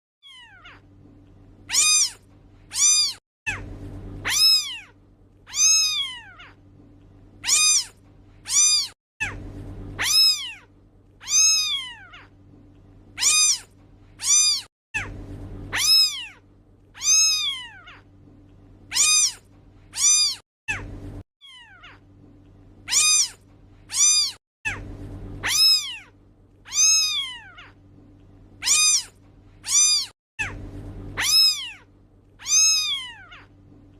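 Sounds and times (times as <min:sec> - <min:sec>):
kitten meowing: 0:00.2 - 0:00.8, 0:01.7 - 0:03.6, 0:04.2 - 0:04.9, 0:05.5 - 0:06.6, 0:07.4 - 0:09.4, 0:10.0 - 0:12.3, 0:13.2 - 0:15.1, 0:15.7 - 0:16.4, 0:17.0 - 0:18.0, 0:18.9 - 0:19.4, 0:20.0 - 0:20.8, 0:21.4 - 0:22.0, 0:22.9 - 0:24.8, 0:25.4 - 0:26.1, 0:26.7 - 0:27.8, 0:28.6 - 0:30.6, 0:31.2 - 0:31.8, 0:32.4 - 0:33.5
low steady hum: 0:00.3 - 0:33.9.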